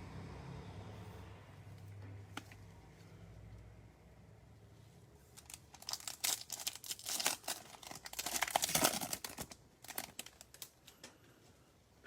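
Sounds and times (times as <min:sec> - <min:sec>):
foil wrapper tearing and crinkling: 0:05.4 - 0:10.8.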